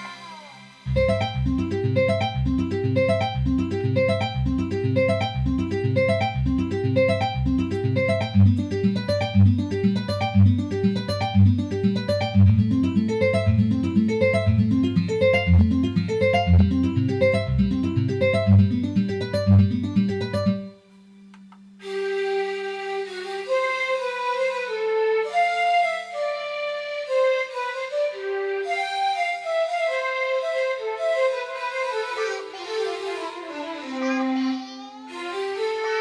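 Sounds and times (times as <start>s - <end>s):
bass line: 0.0s - 20.6s
plucked guitar-like keytar notes: 0.0s - 20.8s
held flute-like note: 21.8s - 32.4s.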